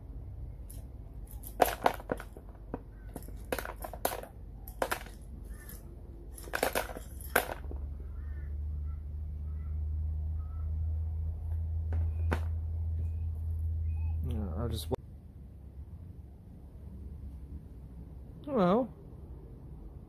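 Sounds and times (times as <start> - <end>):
low steady hum: 0.0 - 20.0
sharp clicks and knocks: 0.7 - 7.9.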